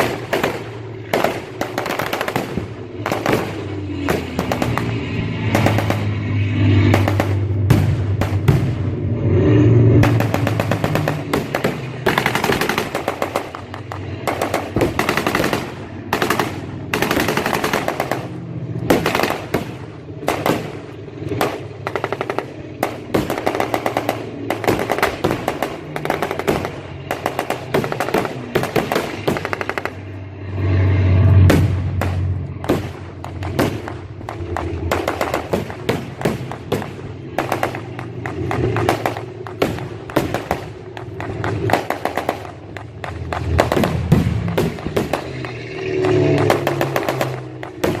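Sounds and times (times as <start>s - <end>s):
machine-gun fire: 0.0s - 8.9s, 9.9s - 30.1s, 31.4s - 48.0s
heavy boom: 6.8s - 9.2s, 31.2s - 42.2s.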